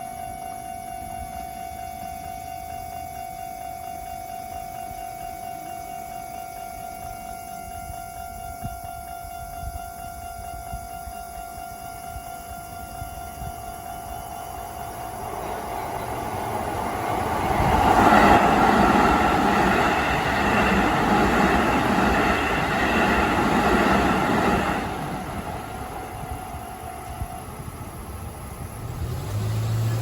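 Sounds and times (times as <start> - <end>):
crossing warning tone: 0.0 - 30.0
train wheels rushing on rails: 4.6 - 30.0
low engine hum: 24.1 - 30.0.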